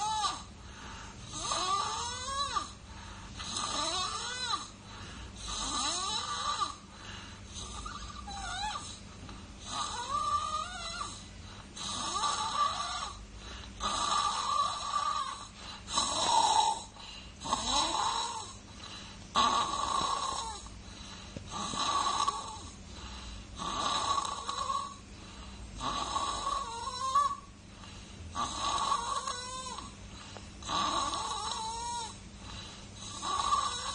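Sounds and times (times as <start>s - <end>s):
baby snoring with whistling: 0.0s - 0.5s, 1.2s - 2.8s, 3.4s - 4.7s, 5.4s - 6.8s, 7.6s - 9.0s, 9.6s - 13.2s, 13.8s - 18.6s, 19.3s - 20.7s, 21.5s - 22.8s, 23.6s - 25.0s, 25.8s - 27.5s, 28.4s - 29.9s, 30.6s - 32.2s, 33.0s - 33.9s.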